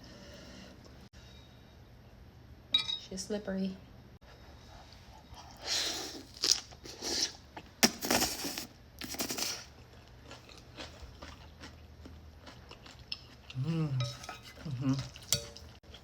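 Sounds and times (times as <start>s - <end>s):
chewing and slurping noodles: 5.4s - 16.0s.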